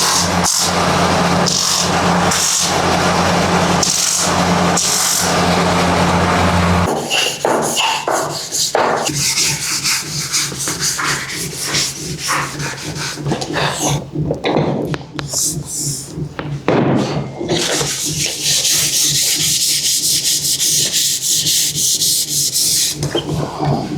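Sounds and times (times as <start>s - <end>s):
power sander humming: 0.0s - 7.1s
sanding scraping strokes: 0.0s - 14.0s, 17.6s - 23.4s
hand rubbing and scraping wood: 0.0s - 23.9s.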